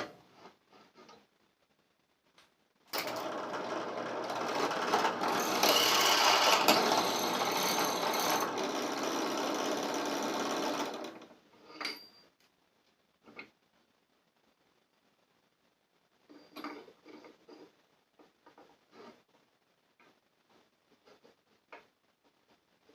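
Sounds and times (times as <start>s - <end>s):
electric drill boring metal: 3.0s - 11.3s.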